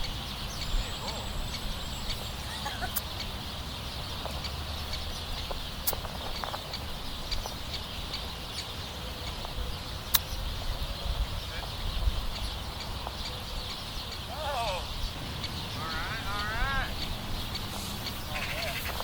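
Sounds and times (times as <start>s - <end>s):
wind buffeting microphone: 0.0s - 19.0s
sharp clicks: 10.1s - 10.4s.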